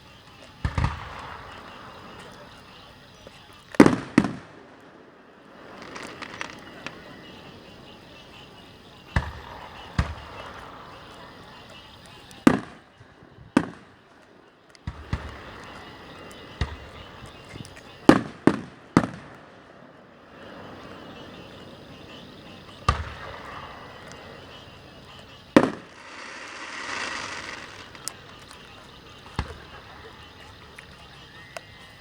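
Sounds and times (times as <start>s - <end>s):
fireworks booming: 0.0s - 32.0s
firework hiss: 5.5s - 12.7s, 20.4s - 32.0s.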